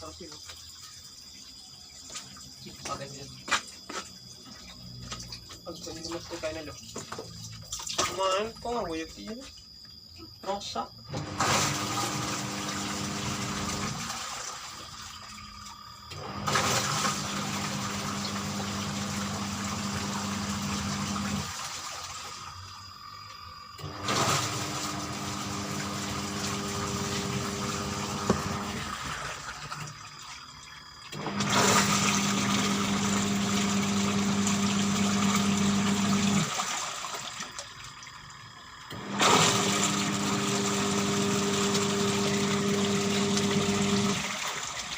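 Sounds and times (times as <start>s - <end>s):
washing machine motor humming: 11.1s - 44.9s
water churning: 11.2s - 22.5s, 23.9s - 44.9s.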